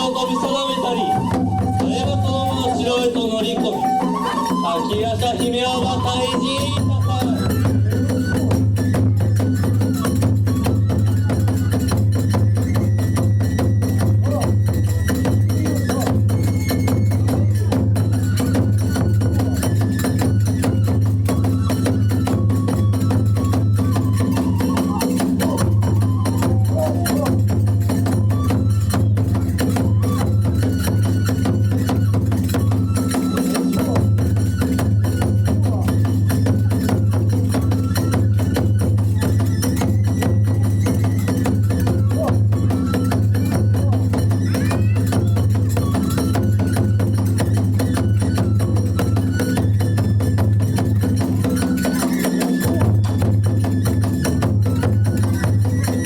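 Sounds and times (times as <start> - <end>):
flute melody: 0.0 - 56.0
rapid drum beats: 0.0 - 56.0
small hand cymbals clashing: 49.2 - 56.0.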